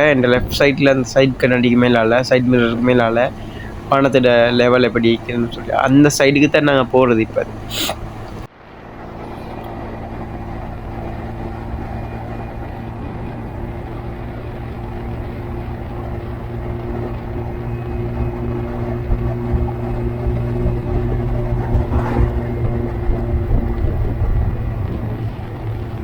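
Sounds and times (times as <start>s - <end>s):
motorcycle engine running: 0.0s - 26.0s
wind on microphone: 9.2s - 26.0s.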